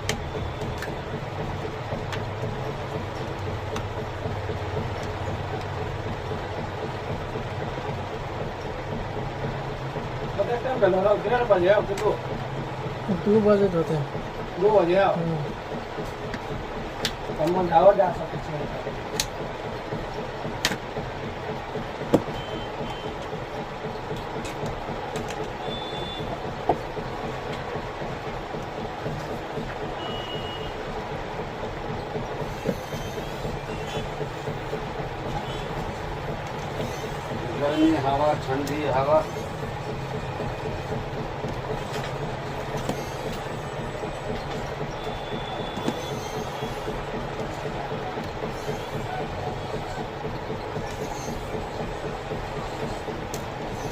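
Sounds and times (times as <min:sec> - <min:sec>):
moving vehicle rumbling: 0:00.0 - 0:53.9
steady background noise: 0:00.0 - 0:53.9
sharp clicks: 0:15.4 - 0:20.9.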